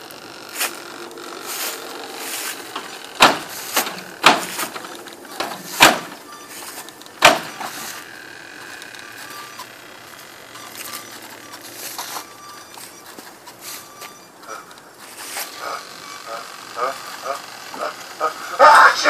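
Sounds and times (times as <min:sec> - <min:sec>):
mechanical background hum: 0:00.0 - 0:19.0
sharp loud bangs: 0:02.8 - 0:06.4, 0:07.2 - 0:07.7.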